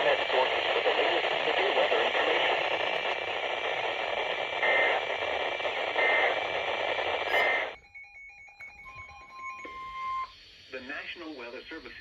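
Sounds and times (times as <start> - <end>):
radio static hissing: 0.0 - 7.8, 10.5 - 12.0.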